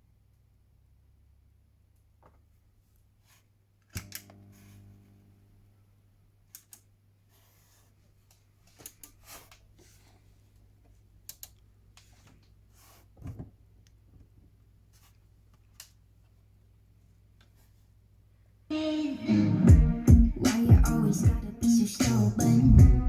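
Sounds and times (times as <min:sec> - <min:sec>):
heavy low knock: 0:22.7 - 0:23.0.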